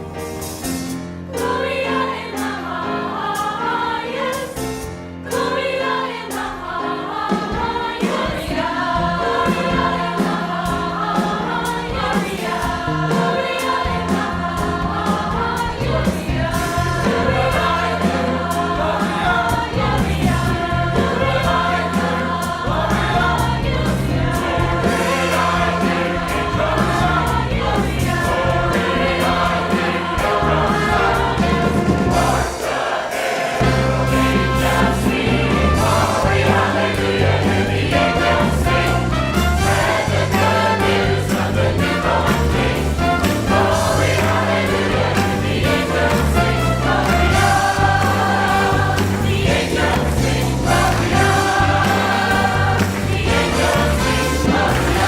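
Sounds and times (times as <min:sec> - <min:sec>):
choir singing with instruments: 0:00.0 - 0:55.0
bass and beat: 0:13.7 - 0:32.5, 0:33.6 - 0:55.0.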